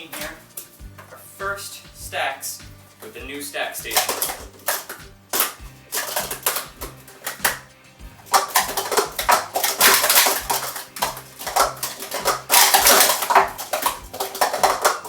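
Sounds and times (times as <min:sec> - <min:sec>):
plastic cups clattering: 0:03.8 - 0:15.0.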